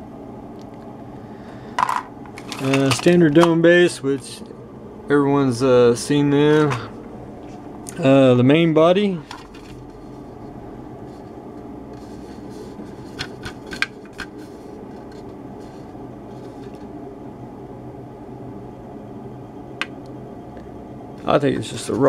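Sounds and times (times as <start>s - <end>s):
fan hum: 0.0s - 22.0s
plastic parts clicking and rustling: 1.8s - 3.6s.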